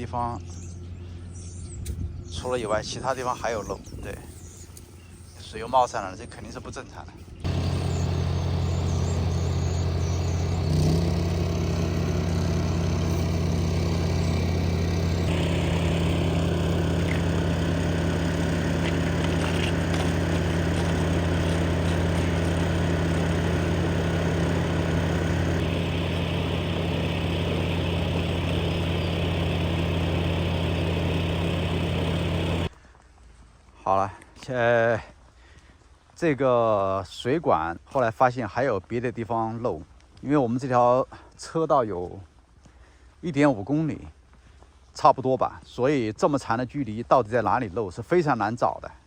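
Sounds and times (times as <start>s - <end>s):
engine idling: 7.4s - 32.8s.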